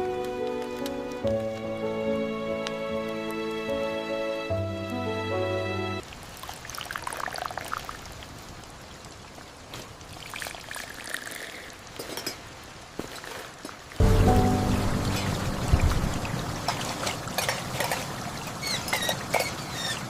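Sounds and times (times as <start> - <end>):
soft music: 0.0 - 6.0, 14.0 - 18.0
liquid pouring and splashing: 6.1 - 8.3, 9.7 - 20.0.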